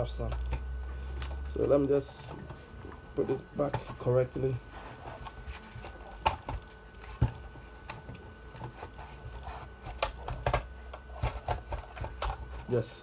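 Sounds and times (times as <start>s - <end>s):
light rubbing and scraping: 0.0s - 6.2s, 8.6s - 10.0s
printer parts knocking and clicking: 9.8s - 12.7s.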